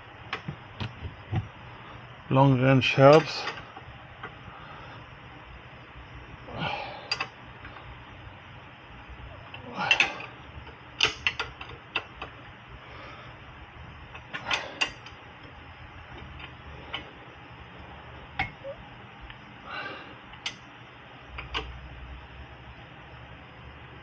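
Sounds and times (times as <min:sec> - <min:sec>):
wrench clicking on bolts: 0:07.1 - 0:07.3, 0:11.0 - 0:12.3, 0:14.1 - 0:15.2.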